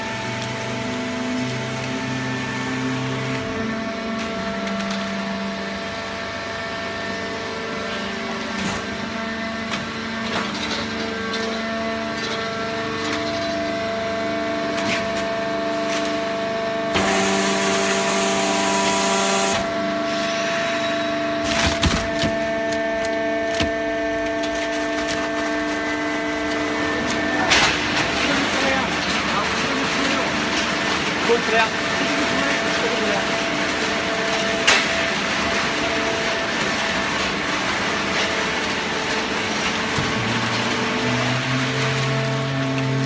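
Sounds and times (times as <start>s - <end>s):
hydraulic machine hum: 0.0s - 43.0s
cardboard cracking and creaking: 21.4s - 30.7s.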